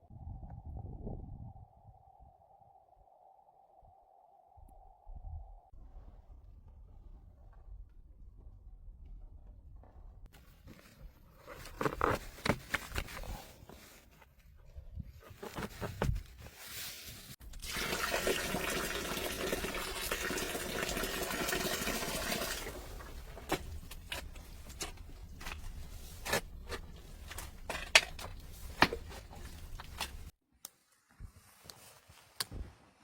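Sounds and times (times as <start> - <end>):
objects being handled: 10.4 - 14.5, 22.2 - 30.3
liquid pouring into container: 17.5 - 23.5.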